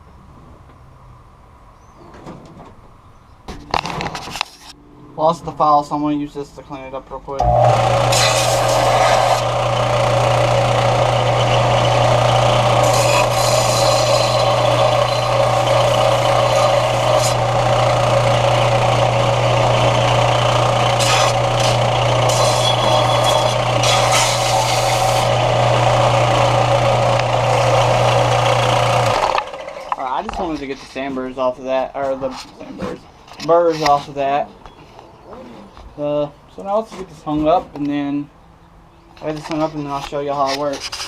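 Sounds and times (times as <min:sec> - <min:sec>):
electric grinder on steel: 0:07.4 - 0:30.1.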